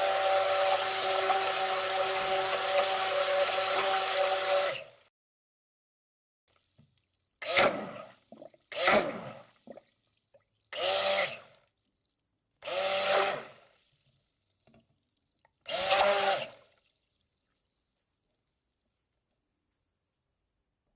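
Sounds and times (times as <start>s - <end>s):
blender motor whine: 0.0s - 5.1s, 8.8s - 9.4s, 10.8s - 11.5s, 12.6s - 13.6s, 15.7s - 16.7s.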